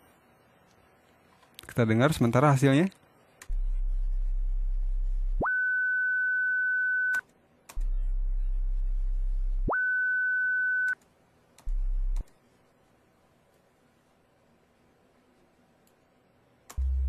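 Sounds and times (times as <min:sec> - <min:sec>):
deep synth hum: 0:03.4 - 0:05.5, 0:07.7 - 0:09.7, 0:11.7 - 0:12.2, 0:16.7 - 0:17.0.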